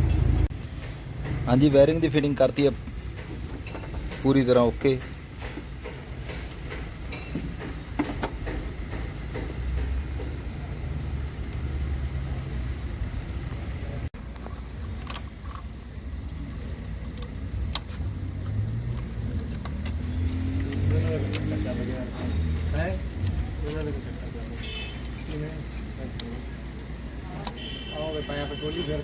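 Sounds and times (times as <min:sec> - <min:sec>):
engine rumbling: 0:00.0 - 0:29.0
metallic clicks and taps: 0:17.0 - 0:24.0.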